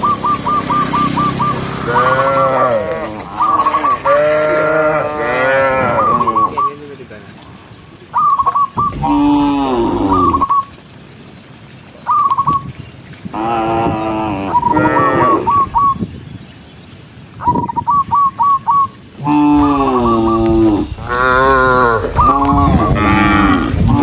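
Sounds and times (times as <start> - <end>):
cattle mooing: 1.8 - 6.3, 8.9 - 10.5, 13.4 - 15.5, 19.2 - 24.0.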